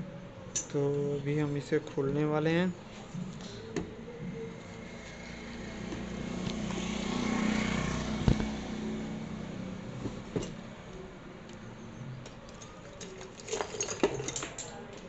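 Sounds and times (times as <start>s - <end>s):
motor vehicle passing by: 3.6s - 10.3s.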